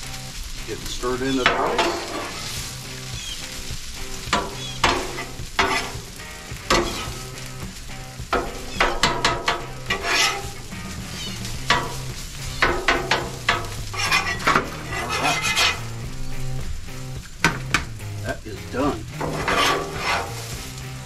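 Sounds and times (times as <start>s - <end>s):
food sizzling on a griddle: 0.0s - 21.0s
utensil scraping a steel cooktop: 1.4s - 2.8s, 4.2s - 7.4s, 8.4s - 16.0s, 19.1s - 20.8s.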